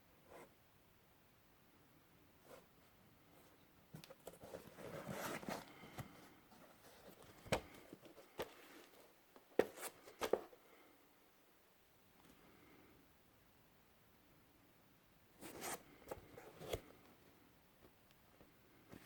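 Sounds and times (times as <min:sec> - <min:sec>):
rustling and scraping of boots: 0:04.2 - 0:10.6.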